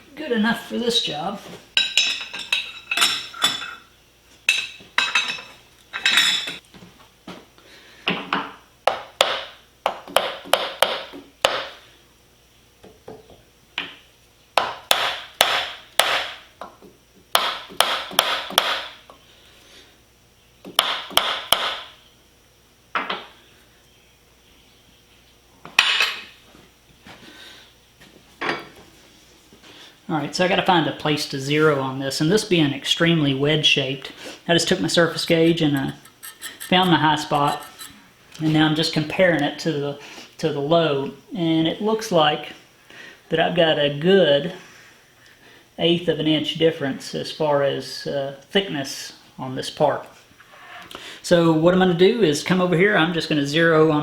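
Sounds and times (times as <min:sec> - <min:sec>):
steel tools knocking and clinking: 0:04.5 - 0:06.6.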